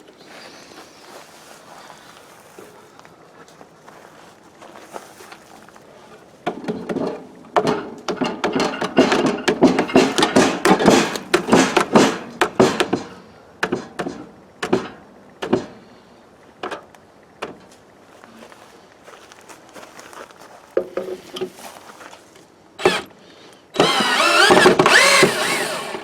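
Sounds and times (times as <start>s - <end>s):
wooden knocks and thuds: 6.4s - 15.8s, 16.6s - 17.7s, 20.8s - 21.6s.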